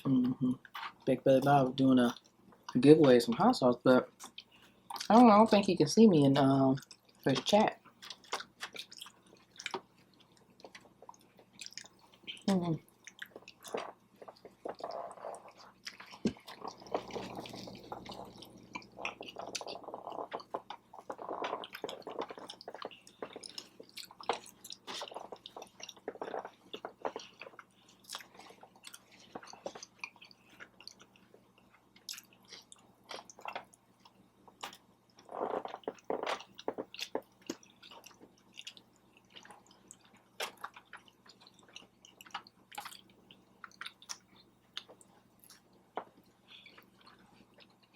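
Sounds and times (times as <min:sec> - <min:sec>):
person chewing food: 0:04.1 - 0:05.2, 0:06.7 - 0:47.9.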